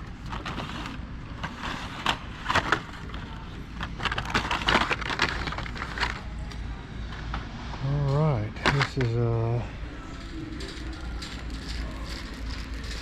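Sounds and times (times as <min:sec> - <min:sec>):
low store hum: 0:00.0 - 0:13.0
plastic packs clicking: 0:00.1 - 0:06.6, 0:10.2 - 0:13.0.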